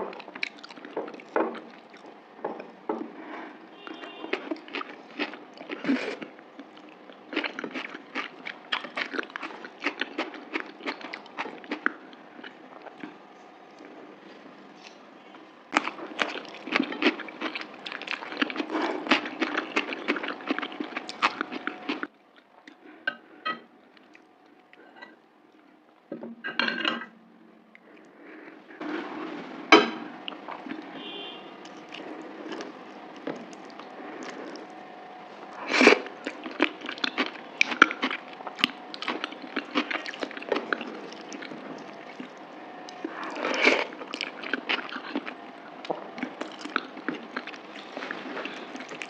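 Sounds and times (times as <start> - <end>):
chewing and mouth sounds: 0.0 - 14.0, 15.7 - 22.8, 30.2 - 30.9, 31.6 - 49.0.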